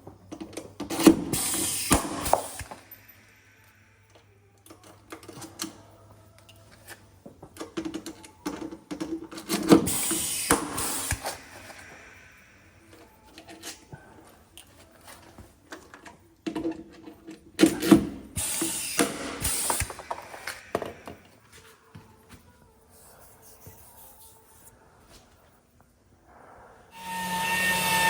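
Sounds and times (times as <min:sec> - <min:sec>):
short hissing bursts: 0:01.3 - 0:03.6, 0:09.9 - 0:12.9, 0:18.4 - 0:21.2.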